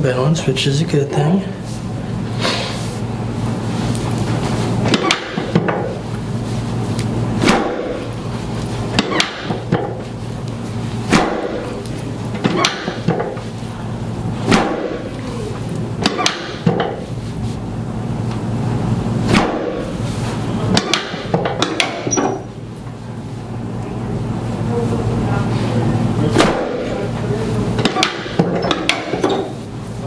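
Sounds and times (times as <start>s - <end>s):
sharp knocks and clacks: 8.9s - 10.0s, 12.4s - 13.4s, 20.7s - 22.3s, 27.8s - 29.5s.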